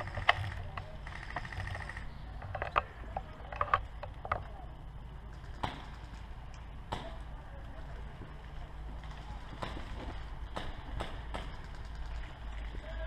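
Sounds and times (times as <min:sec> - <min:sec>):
airsoft gun shots: 0:05.4 - 0:06.2, 0:09.6 - 0:12.2.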